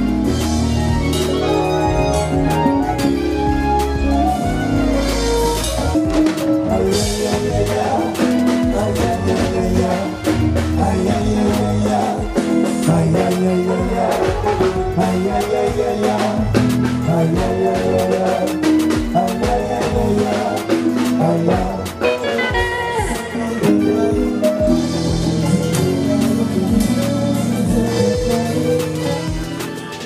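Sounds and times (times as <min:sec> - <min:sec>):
sustained chords: 0:00.0 - 0:18.4
drum beat: 0:00.0 - 0:30.0.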